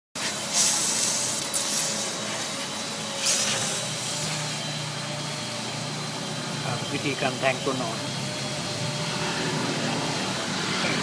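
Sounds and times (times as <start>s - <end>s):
steady mechanical hum: 0.2s - 11.0s
short hisses of air: 0.4s - 2.2s, 3.1s - 4.4s.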